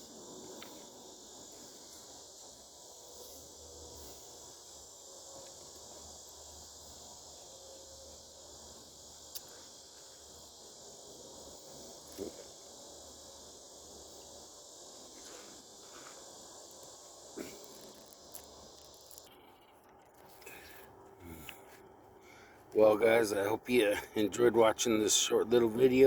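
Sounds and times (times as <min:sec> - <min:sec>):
high-pitched insect chirring: 0:00.0 - 0:19.7.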